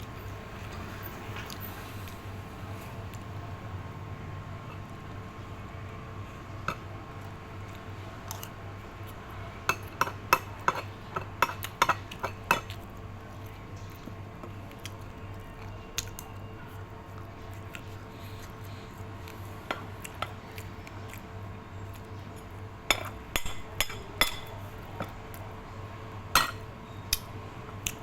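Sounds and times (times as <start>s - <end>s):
utensils clinking against dishes: 22.9s - 25.1s, 26.4s - 27.2s.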